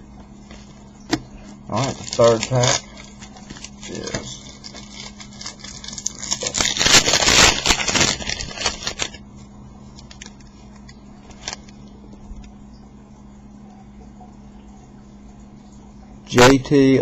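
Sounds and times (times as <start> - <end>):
faint steady hum: 0.0 - 17.0
foil wrapper tearing and crinkling: 1.7 - 9.2, 10.0 - 11.8.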